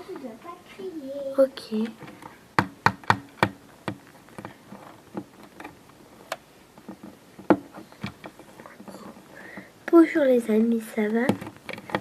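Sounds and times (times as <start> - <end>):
faint rustling: 0.0 - 2.6, 3.6 - 12.0
plastic toys clicking on hard surface: 11.0 - 12.0.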